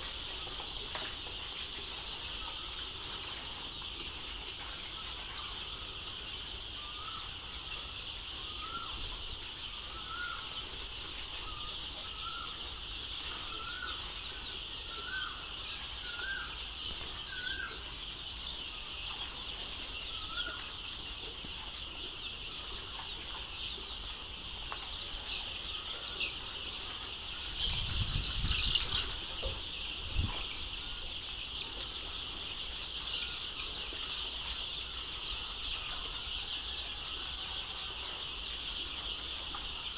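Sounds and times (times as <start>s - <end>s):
chicks peeping: 0.0s - 39.9s.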